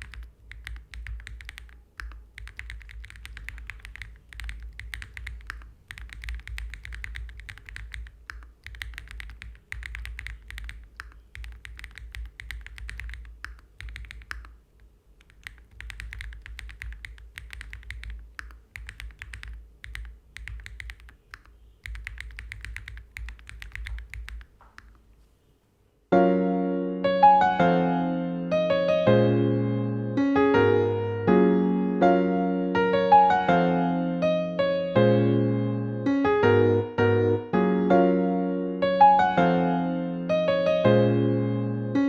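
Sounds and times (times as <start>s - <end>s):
mechanical keyboard typing: 0.0s - 25.0s
loud piano music: 26.1s - 42.0s.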